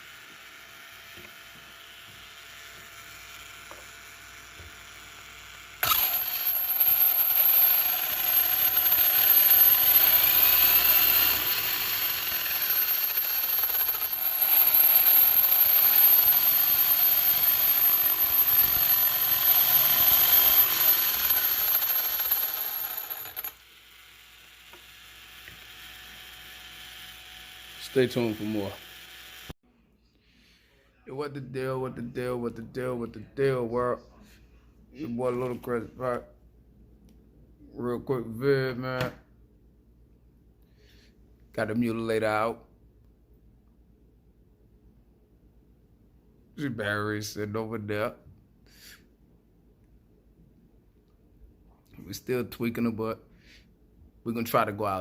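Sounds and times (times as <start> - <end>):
toy car motor high whine: 0.0 - 29.6.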